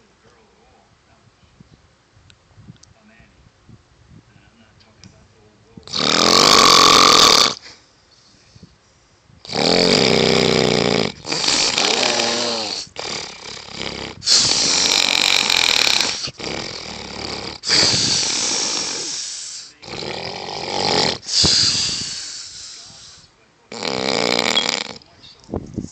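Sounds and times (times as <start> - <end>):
loud snoring with rattle: 5.8 - 7.6, 9.4 - 25.1.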